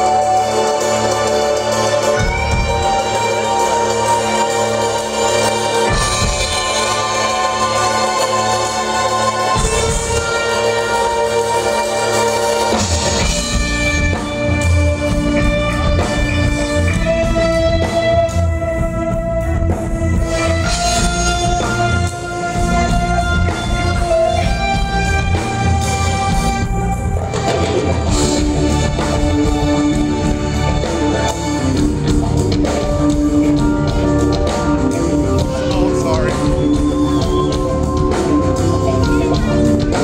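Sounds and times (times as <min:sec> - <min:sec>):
steady drum beat: 0:00.0 - 0:40.0
sustained guitar notes: 0:12.6 - 0:40.0.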